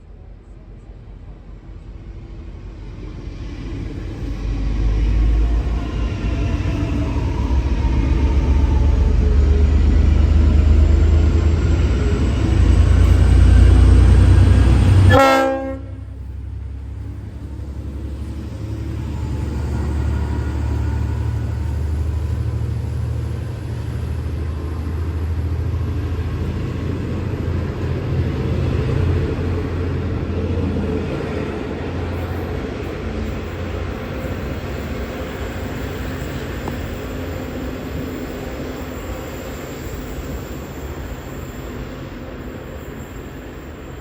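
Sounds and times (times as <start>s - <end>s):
diesel locomotive rumbling: 0.0s - 44.0s
train horn blast: 13.4s - 16.2s.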